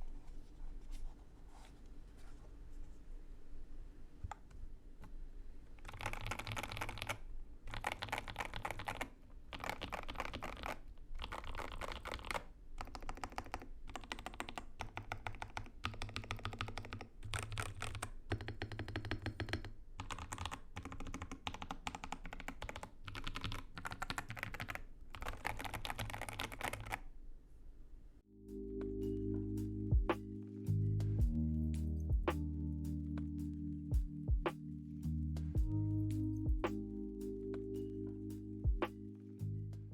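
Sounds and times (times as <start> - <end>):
mechanical keyboard typing: 5.8 - 27.0.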